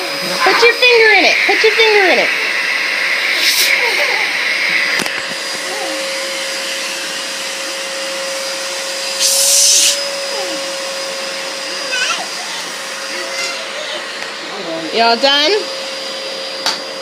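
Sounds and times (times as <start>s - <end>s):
vacuum cleaner running: 0.0s - 17.0s
short hissy bursts: 9.2s - 10.0s.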